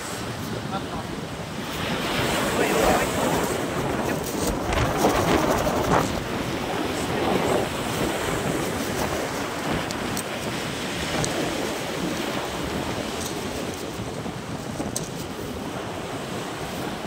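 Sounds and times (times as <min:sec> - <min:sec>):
waves breaking: 0:00.0 - 0:17.0
wind buffeting microphone: 0:00.0 - 0:17.0.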